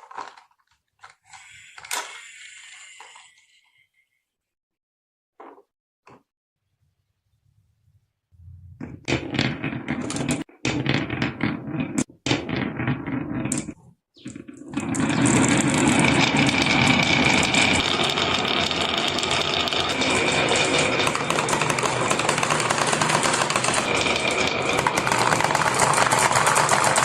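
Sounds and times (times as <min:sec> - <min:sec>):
marbles rattling down wooden track: 0:09.0 - 0:27.0.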